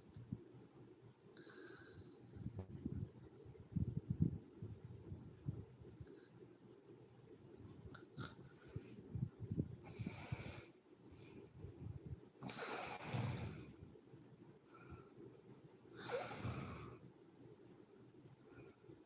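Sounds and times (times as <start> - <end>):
heavy noisy breaths: 8.5 - 13.9.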